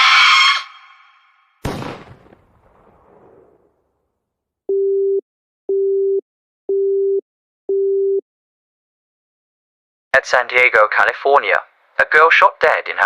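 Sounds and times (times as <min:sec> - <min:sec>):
telephone busy tone beeps: 0:04.7 - 0:08.2.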